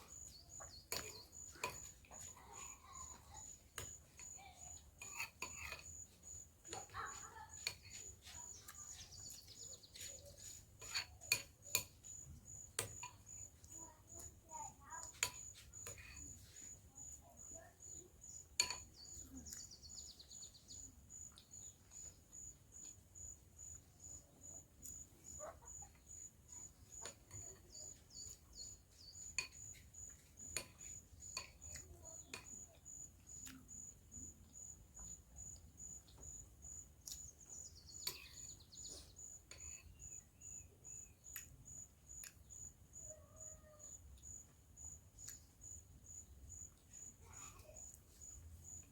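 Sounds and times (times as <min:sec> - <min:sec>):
cricket chirping: 0:00.0 - 0:48.9
faint eating clicks and taps: 0:00.0 - 0:48.9.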